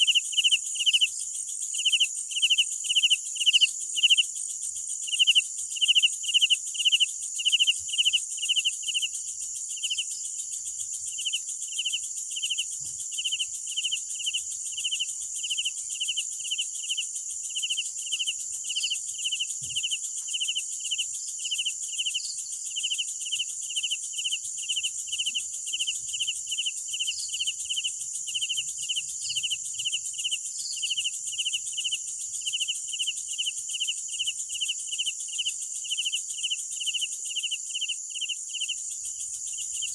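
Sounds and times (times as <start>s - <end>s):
cricket chirping: 0.0s - 39.9s
high-pitched insect trill: 0.0s - 39.9s.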